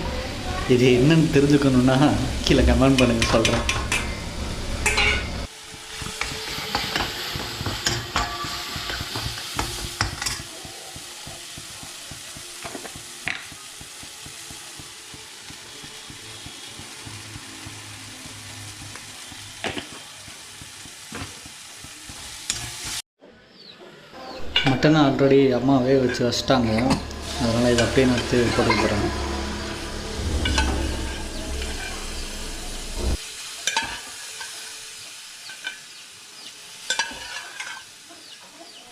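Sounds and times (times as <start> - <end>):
masala sizzling in a pan: 0.0 - 23.1, 24.4 - 38.9
spoon scraping and clinking on pan: 4.8 - 5.4, 36.9 - 37.9.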